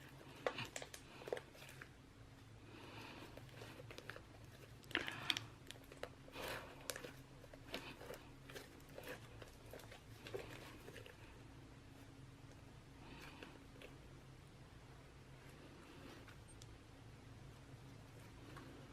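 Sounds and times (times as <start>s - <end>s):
small clicks and crackles: 0.0s - 2.0s, 3.0s - 11.3s.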